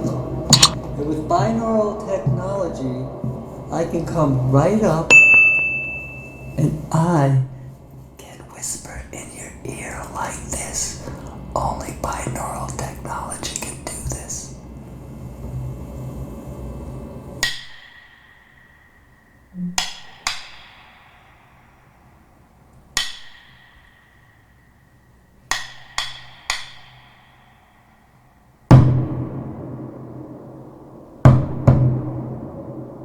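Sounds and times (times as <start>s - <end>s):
wood block strikes: 0.5s - 0.8s, 5.1s - 6.5s, 23.0s - 24.4s, 25.5s - 27.8s
heavy drum hits: 28.7s - 33.0s.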